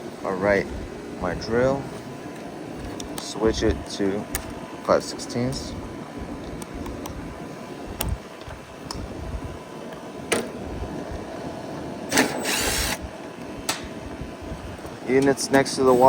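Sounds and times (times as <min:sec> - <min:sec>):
steady low hum: 0:00.0 - 0:16.0
cordless drill whirring: 0:12.1 - 0:13.1.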